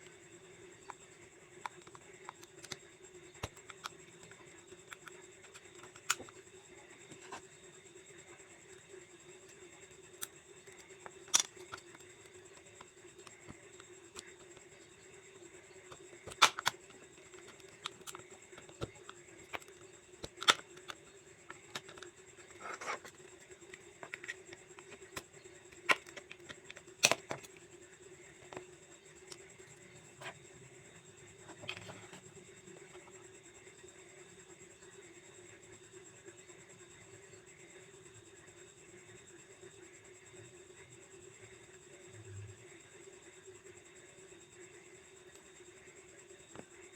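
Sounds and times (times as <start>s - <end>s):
steady low hum: 0.0s - 46.9s
sharp clicks of plastic parts: 1.6s - 6.4s, 10.2s - 14.7s, 15.9s - 27.6s.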